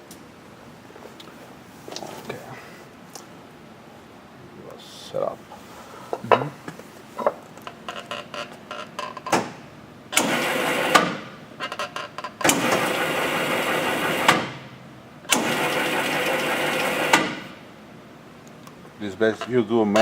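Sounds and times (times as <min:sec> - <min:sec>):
sharp machine clunk: 0:12.4 - 0:13.0, 0:15.3 - 0:15.8, 0:16.8 - 0:17.5.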